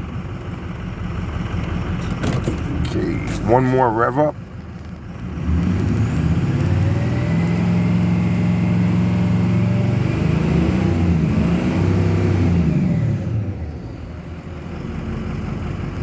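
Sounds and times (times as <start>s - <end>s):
diesel engine revving rough: 0.0s - 16.0s.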